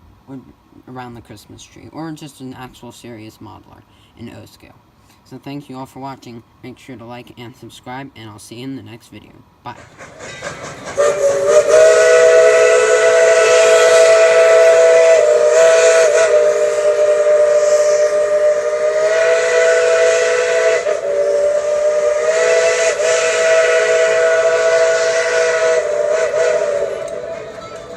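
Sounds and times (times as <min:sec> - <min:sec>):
steam hissing: 0:09.8 - 0:27.9
chime steam whistle blast: 0:10.3 - 0:27.9.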